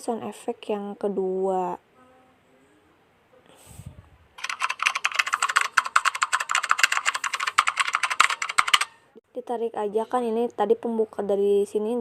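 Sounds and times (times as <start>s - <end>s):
typewriter key clacks: 4.4s - 9.0s.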